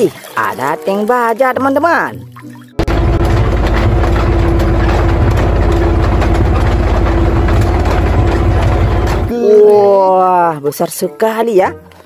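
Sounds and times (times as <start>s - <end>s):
tank engine idling: 2.8s - 9.3s.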